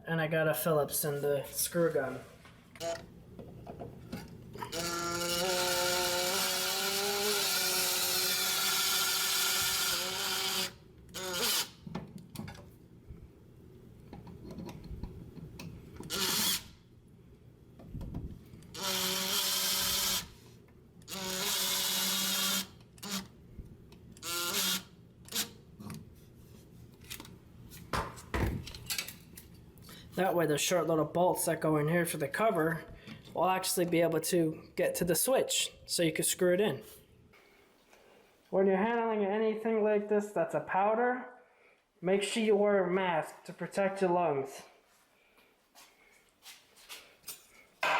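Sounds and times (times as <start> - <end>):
screw gun running: 4.6 - 11.8, 16.0 - 16.8, 18.6 - 20.4, 21.1 - 23.3, 24.2 - 25.6.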